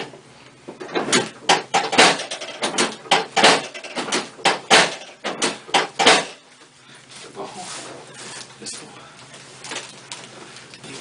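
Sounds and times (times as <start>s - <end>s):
knocks and thuds: 0.7s - 6.4s.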